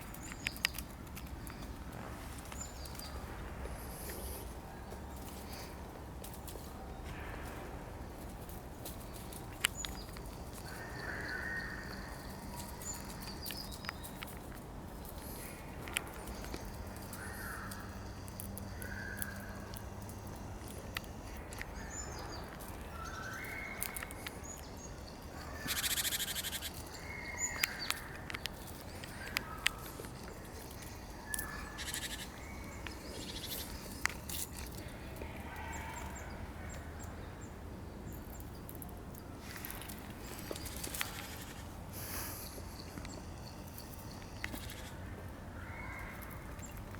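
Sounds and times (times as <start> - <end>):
birds calling harshly: 8.8 - 38.5, 39.4 - 46.9.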